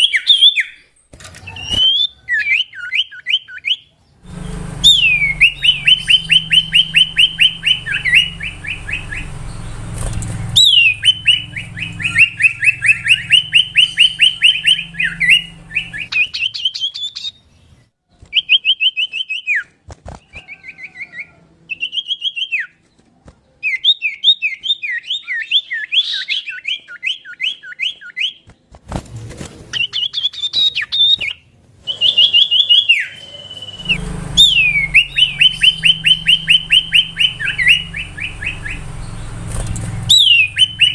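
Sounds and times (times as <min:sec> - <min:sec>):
bird singing whistled notes: 0:00.0 - 0:17.5, 0:29.8 - 0:39.4, 0:40.0 - 0:40.9
low hum: 0:04.2 - 0:16.1.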